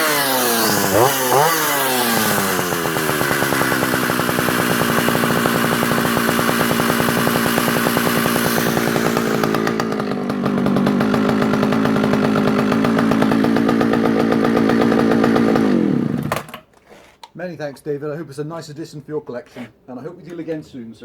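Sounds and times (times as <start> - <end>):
chainsaw running: 0.0 - 16.6.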